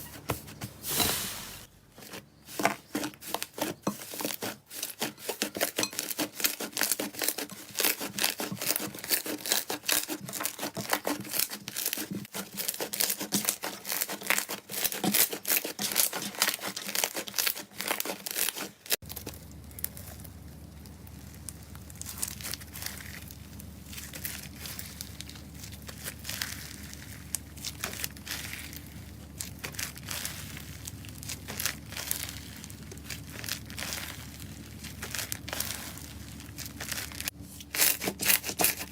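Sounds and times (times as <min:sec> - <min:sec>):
steady low hum: 0:19.0 - 0:38.2.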